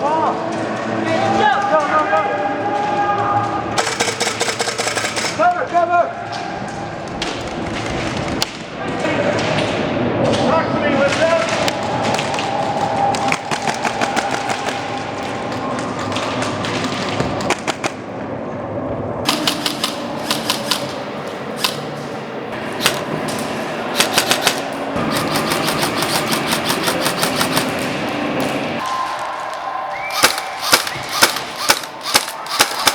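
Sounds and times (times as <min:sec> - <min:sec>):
airsoft guns firing clicks: 0:19.3 - 0:21.9, 0:22.8 - 0:28.6, 0:30.0 - 0:32.9.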